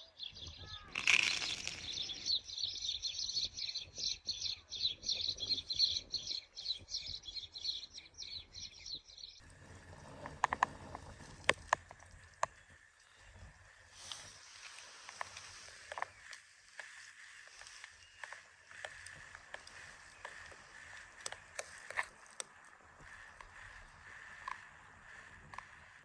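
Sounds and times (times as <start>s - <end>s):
songbird chirping: 0.0s - 9.5s
sharp clicks: 0.9s - 2.4s
faint hiss: 9.4s - 26.0s.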